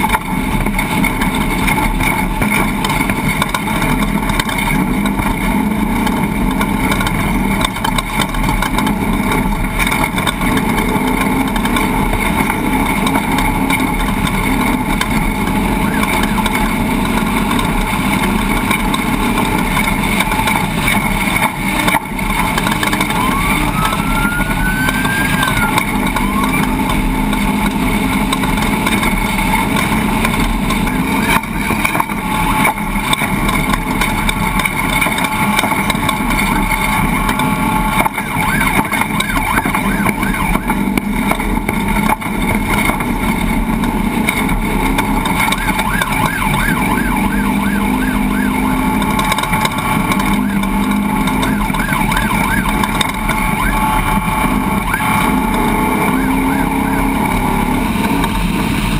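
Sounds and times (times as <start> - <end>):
steady engine noise: 0.0 - 58.9
short rising tone: 22.9 - 27.6.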